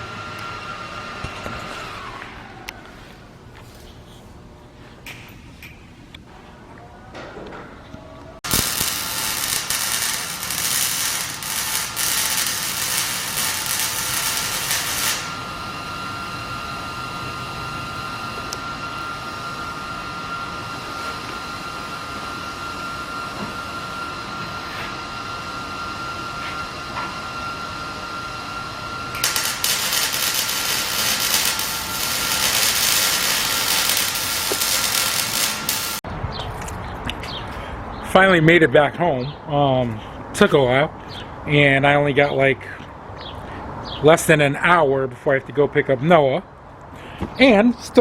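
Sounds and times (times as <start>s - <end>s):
steady high hum: 0.0s - 36.3s
loud hissing power tool: 8.4s - 16.5s, 29.0s - 36.0s.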